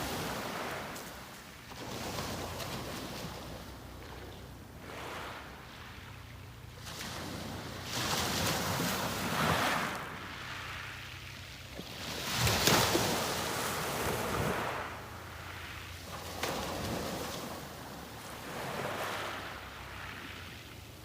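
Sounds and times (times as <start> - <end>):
sea waves breaking on beach: 0.0 - 21.0.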